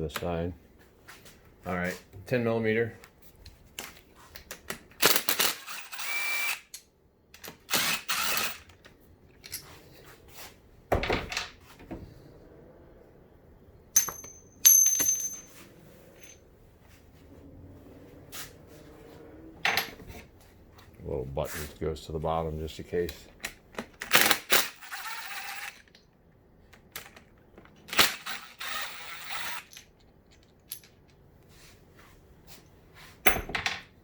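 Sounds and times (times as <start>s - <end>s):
power tool running on bolts: 5.0s - 6.6s, 7.7s - 8.7s, 24.1s - 25.9s, 27.9s - 29.8s.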